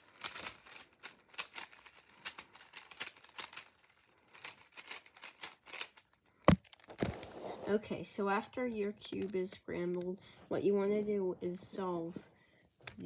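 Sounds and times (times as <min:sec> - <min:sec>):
puzzle cube plastic clicks: 0:00.0 - 0:07.3, 0:09.0 - 0:10.2.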